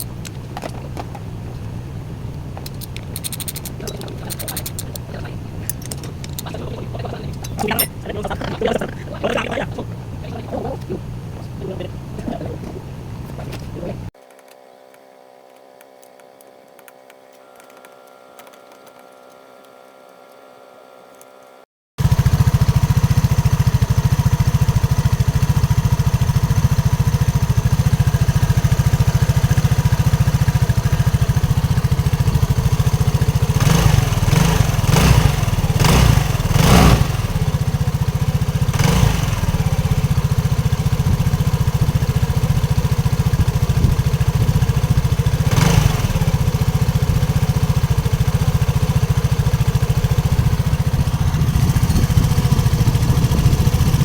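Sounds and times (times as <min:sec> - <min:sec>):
scooter engine running: 0:00.0 - 0:14.1, 0:22.0 - 0:54.0
faint steady hum: 0:00.0 - 0:21.6.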